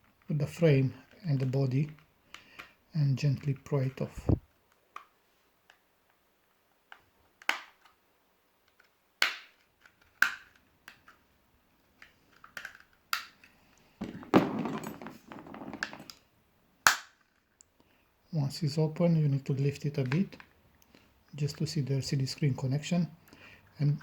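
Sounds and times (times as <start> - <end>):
plastic case clips snapping: 6.9 - 8.0, 8.7 - 11.2, 12.0 - 13.5, 16.9 - 17.2
plastic scraping and rattling: 14.0 - 16.2.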